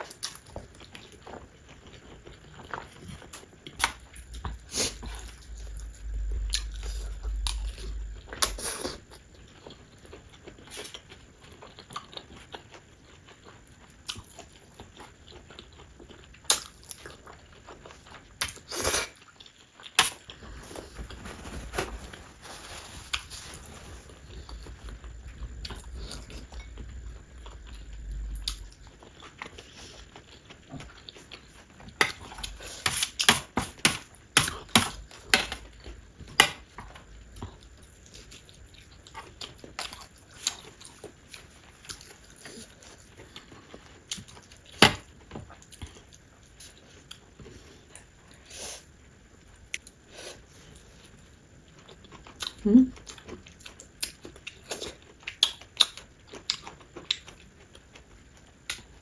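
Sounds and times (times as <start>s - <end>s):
close chewing and biting: 0.0s - 21.2s, 22.6s - 48.4s, 49.8s - 59.0s.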